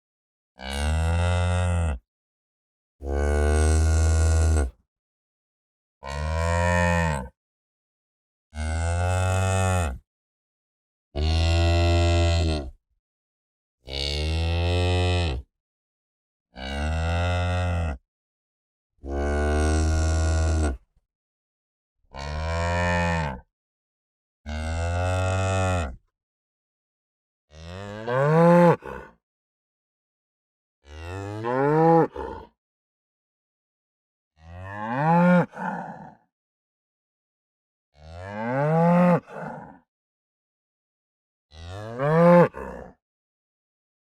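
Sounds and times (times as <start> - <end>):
cow mooing: 0.6 - 2.0, 3.0 - 4.8, 6.0 - 7.3, 16.6 - 18.0, 19.0 - 20.8, 22.1 - 23.5, 24.5 - 25.9, 27.5 - 28.8, 30.9 - 32.2, 34.4 - 36.2, 38.0 - 39.7, 41.5 - 42.5.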